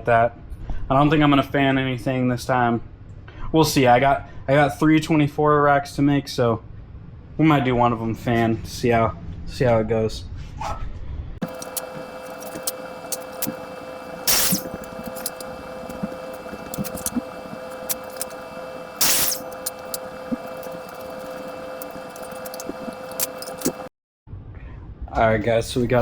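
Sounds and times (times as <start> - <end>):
power tool humming: 11.4 - 23.9.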